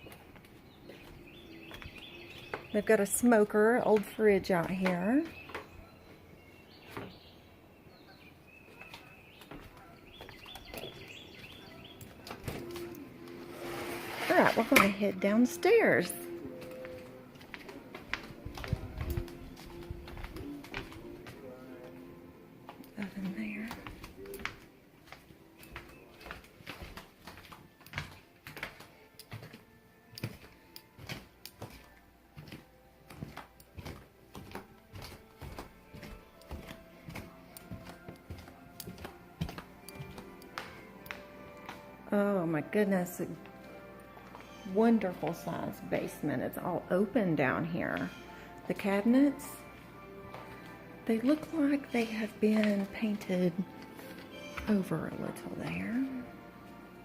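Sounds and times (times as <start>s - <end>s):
birds chirping: 0.0s - 13.4s, 22.8s - 27.0s, 42.4s - 49.8s, 50.5s - 56.4s
footsteps in a house: 0.0s - 42.2s, 43.3s - 46.2s, 48.0s - 57.0s
faint background music: 0.0s - 57.0s.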